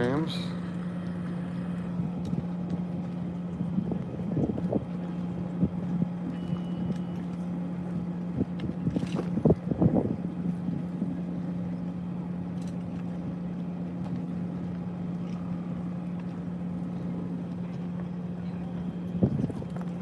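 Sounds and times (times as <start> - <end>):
low engine-like hum: 0.0 - 20.0
wind on microphone: 1.8 - 6.9, 8.1 - 11.3, 18.7 - 20.0.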